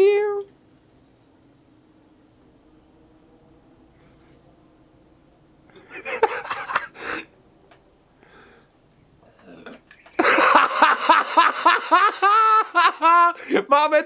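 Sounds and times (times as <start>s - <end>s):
dog burping: 9.2s - 10.1s.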